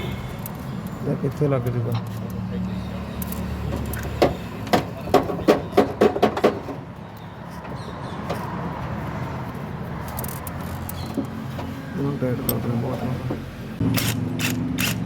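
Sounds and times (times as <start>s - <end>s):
tools and parts knocking: 3.7s - 6.8s.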